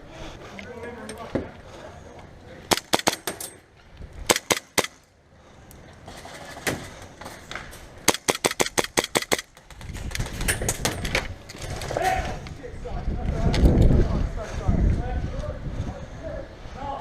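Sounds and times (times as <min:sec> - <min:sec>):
airsoft gun shots: 0:02.7 - 0:03.4, 0:04.3 - 0:05.0, 0:08.0 - 0:09.5.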